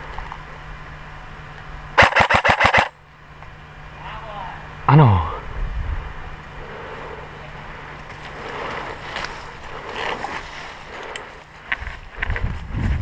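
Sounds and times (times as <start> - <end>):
sharp clicks: 2.0 - 3.0
rustling and scuffing of movement: 7.9 - 13.0.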